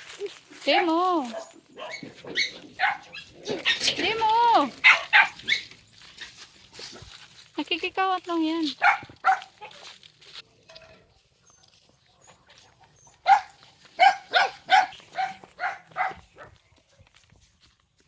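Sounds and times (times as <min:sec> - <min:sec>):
dog barking: 0:00.7 - 0:03.9, 0:04.8 - 0:05.7, 0:08.8 - 0:09.8, 0:13.2 - 0:16.5.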